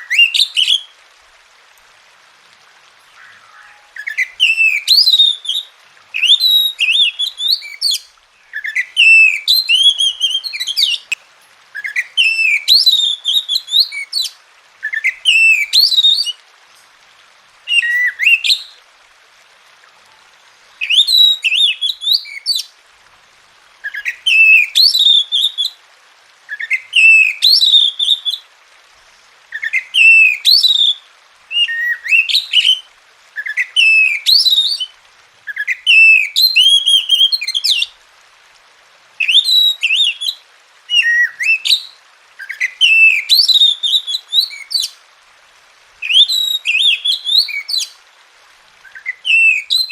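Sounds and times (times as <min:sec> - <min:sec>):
bird singing whistled notes: 0:00.0 - 0:00.9, 0:03.1 - 0:11.2, 0:11.8 - 0:16.4, 0:17.7 - 0:18.8, 0:20.8 - 0:22.7, 0:23.8 - 0:25.8, 0:26.5 - 0:28.4, 0:29.6 - 0:34.9, 0:35.5 - 0:37.9, 0:39.2 - 0:45.0, 0:46.0 - 0:48.0, 0:48.8 - 0:49.9.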